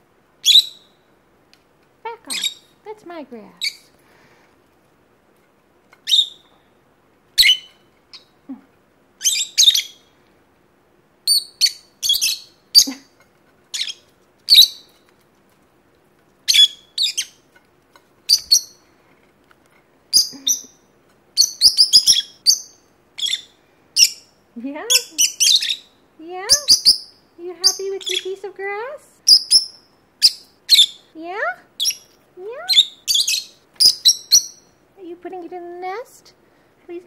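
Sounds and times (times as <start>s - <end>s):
lovebirds chirping: 0.4s - 1.2s, 2.0s - 4.4s, 5.9s - 10.4s, 11.2s - 15.3s, 16.4s - 17.6s, 18.2s - 19.1s, 20.0s - 37.0s.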